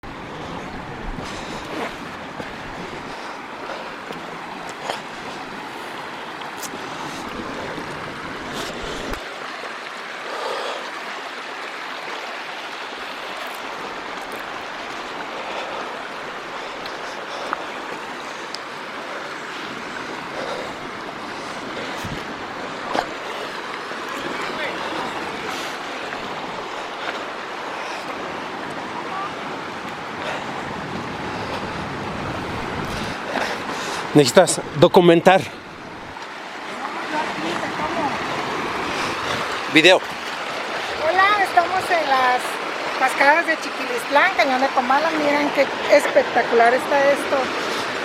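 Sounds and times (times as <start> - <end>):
waterfall rushing: 0.0 - 48.0.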